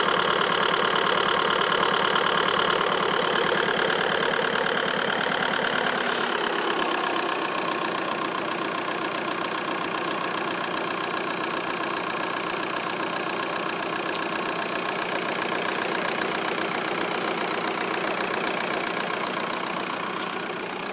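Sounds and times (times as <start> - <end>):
car engine idling with clatter: 0.0 - 20.9.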